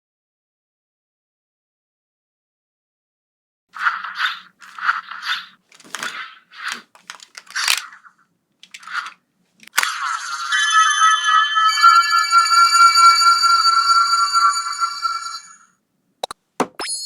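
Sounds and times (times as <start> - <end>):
crinkling packaging: 3.8 - 9.9.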